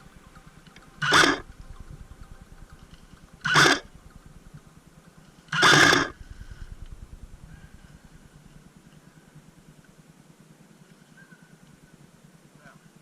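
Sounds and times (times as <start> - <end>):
airsoft rifle firing bursts: 1.0 - 1.4, 5.5 - 6.2.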